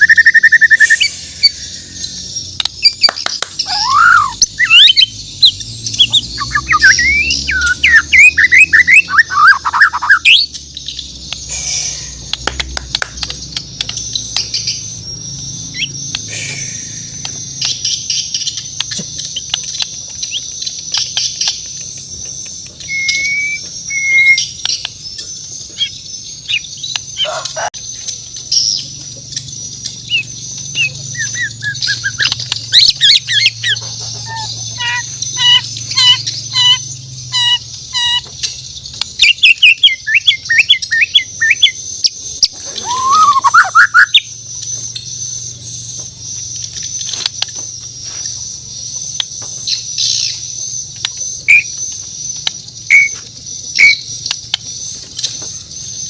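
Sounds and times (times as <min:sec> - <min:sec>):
bird singing whistled song: 0:00.0 - 0:47.6, 0:48.3 - 0:56.0.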